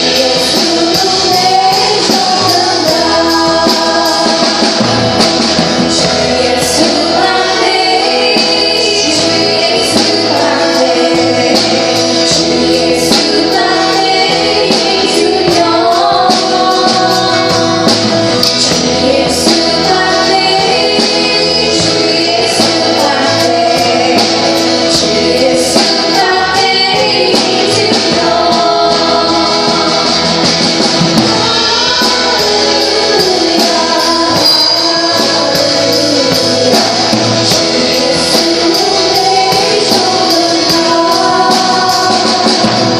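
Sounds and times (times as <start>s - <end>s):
voices singing along: 0.0s - 42.9s
worship band playing: 0.0s - 42.9s
tambourine or cymbal hits: 34.3s - 36.3s.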